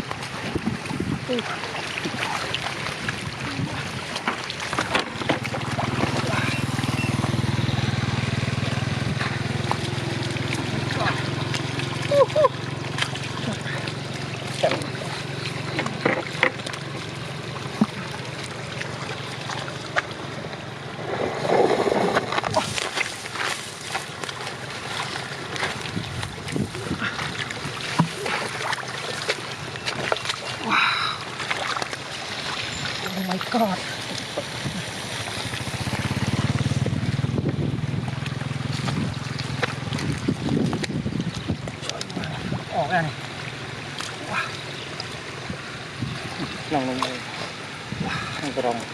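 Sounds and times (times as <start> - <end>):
boat engine chugging: 0.0 - 21.2, 21.9 - 48.9
water splashing and sloshing: 0.0 - 48.9
low hum: 2.7 - 41.7.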